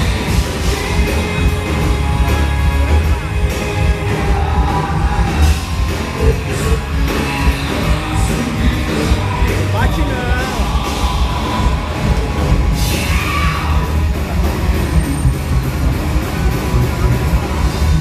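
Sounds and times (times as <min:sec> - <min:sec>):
person singing: 0:00.0 - 0:14.1
live heavy metal band playing: 0:00.0 - 0:18.0.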